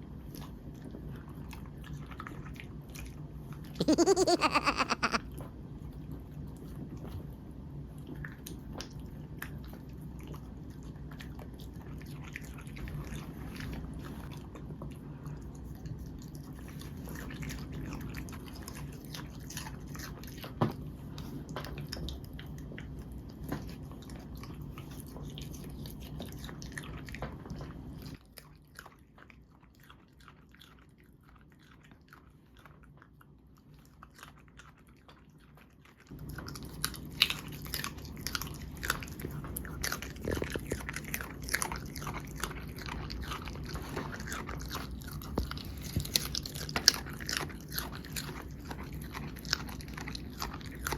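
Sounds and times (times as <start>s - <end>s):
dog chewing vegetables: 21.7s - 50.9s.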